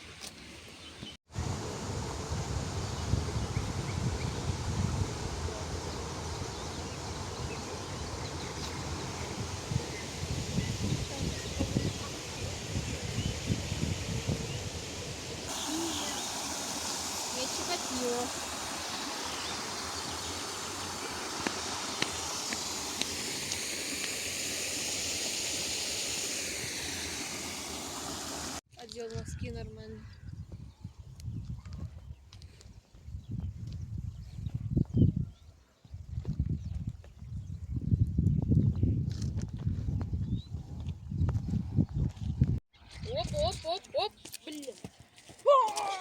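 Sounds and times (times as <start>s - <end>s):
steady hissing noise: 1.3s - 28.6s
wind buffeting microphone: 1.4s - 16.2s, 29.1s - 44.2s.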